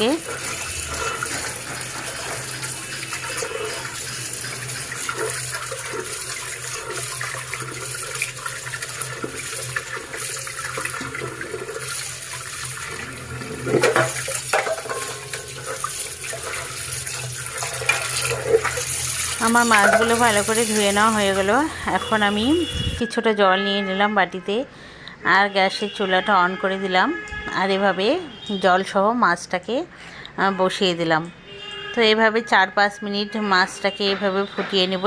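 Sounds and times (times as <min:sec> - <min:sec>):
water running and splashing: 0:00.0 - 0:22.7.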